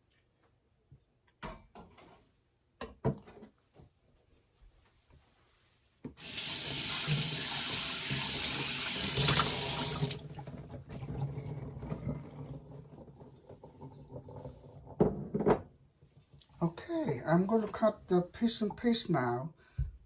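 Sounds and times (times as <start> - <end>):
tap water running: 6.2 - 14.9.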